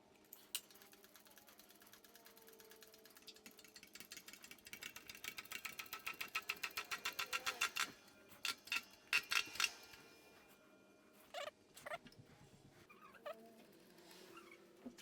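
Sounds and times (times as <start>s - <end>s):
ratchet wrench clicking: 2.4s - 9.7s.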